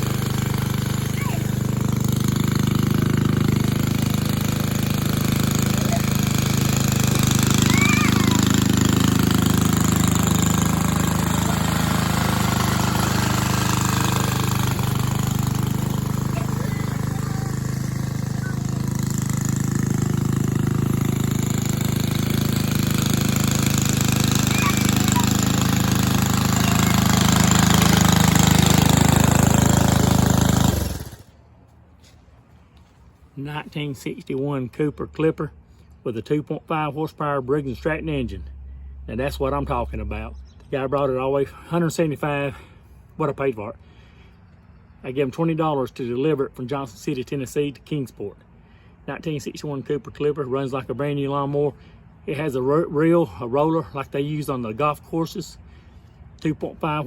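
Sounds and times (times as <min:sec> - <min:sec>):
mower engine running: 0:00.0 - 0:31.5.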